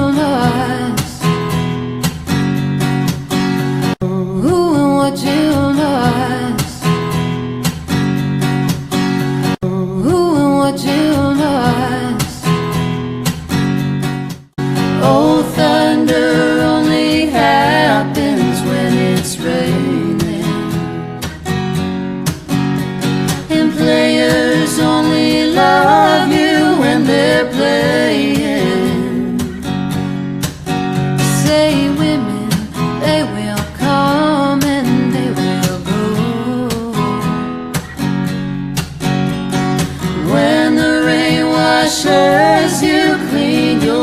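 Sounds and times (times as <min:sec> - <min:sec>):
person singing: 0:00.0 - 0:01.2, 0:04.0 - 0:06.8, 0:09.6 - 0:12.5, 0:14.9 - 0:21.0, 0:23.4 - 0:29.7, 0:31.2 - 0:37.2, 0:39.9 - 0:44.0
strummed acoustic guitar: 0:00.0 - 0:44.0.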